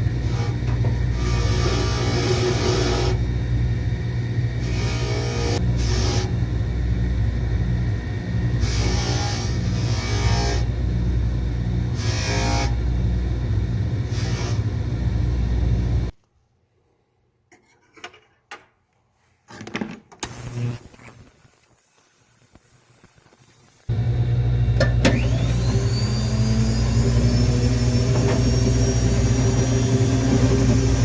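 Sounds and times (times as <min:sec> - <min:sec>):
machine humming with hissing surges: 0:20.2 - 0:31.0
high-pitched motor whir: 0:25.2 - 0:31.0.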